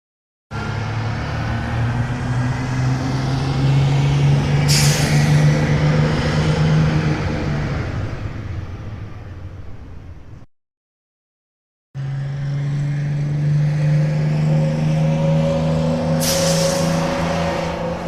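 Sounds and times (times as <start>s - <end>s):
bus engine running: 0.6s - 10.5s, 12.0s - 18.0s
air brake hiss: 4.7s - 5.4s, 16.2s - 17.2s.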